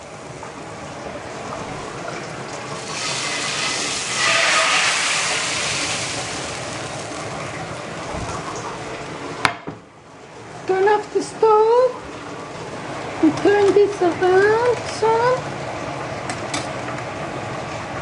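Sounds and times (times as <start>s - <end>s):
water hissing in hot pan: 2.7s - 7.5s.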